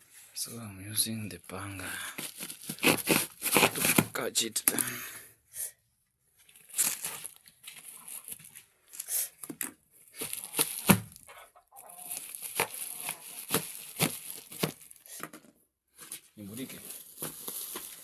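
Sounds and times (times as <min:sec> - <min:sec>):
rustling: 0:06.4 - 0:09.1, 0:10.0 - 0:15.2, 0:16.0 - 0:18.0
chickens clucking: 0:11.3 - 0:12.2.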